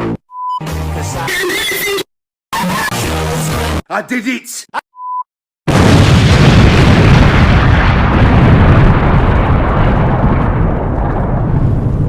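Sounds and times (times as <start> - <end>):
loud explosion: 5.7 - 12.0.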